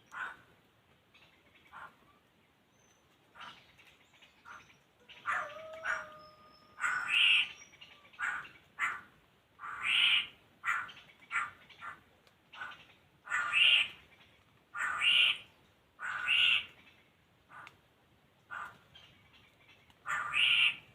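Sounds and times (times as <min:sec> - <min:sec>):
birds harsh chattering calls: 0:03.4 - 0:17.6, 0:18.5 - 0:20.9.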